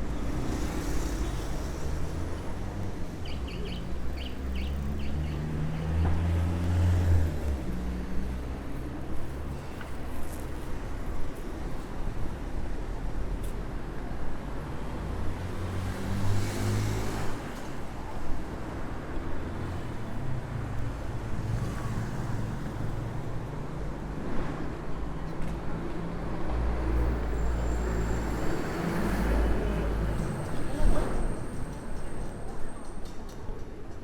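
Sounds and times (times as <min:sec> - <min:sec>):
vehicles passing by: 0:00.0 - 0:34.0
traffic engine rumble: 0:17.3 - 0:34.0.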